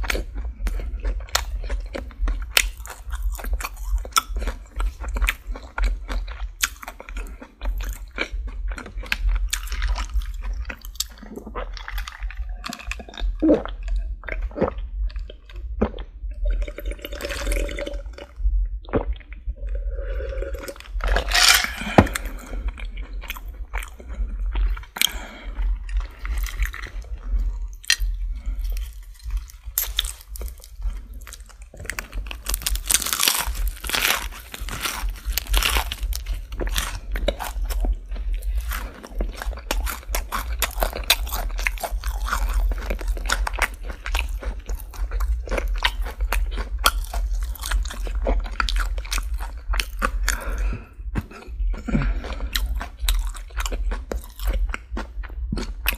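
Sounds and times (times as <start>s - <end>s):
crunching fried chicken: 0.0s - 16.1s, 20.6s - 55.9s
steady low hum: 7.2s - 45.6s.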